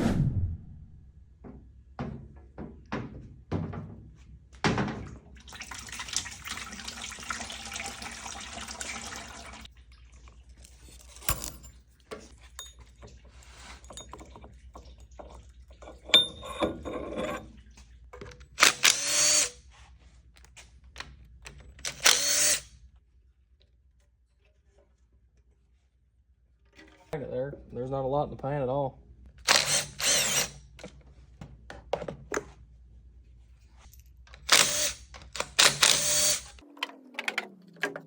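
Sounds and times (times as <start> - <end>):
tools and parts clunking: 10.7 - 18.6, 35.1 - 38.0
cordless power tool spinning: 18.6 - 19.6, 21.8 - 22.7, 29.4 - 30.7, 34.4 - 36.6.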